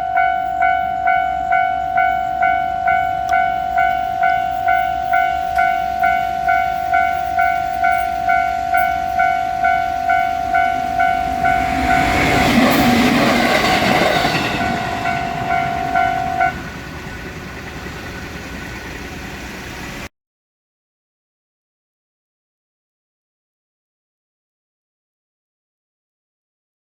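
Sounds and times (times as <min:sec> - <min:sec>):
level crossing alarm bell: 0:00.0 - 0:18.7
steady low rumble: 0:00.0 - 0:20.1
train passing: 0:00.0 - 0:20.1.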